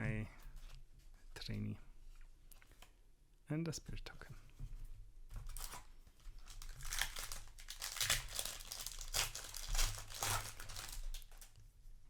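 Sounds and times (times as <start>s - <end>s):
foil wrapper crinkling and tearing: 5.5s - 11.6s.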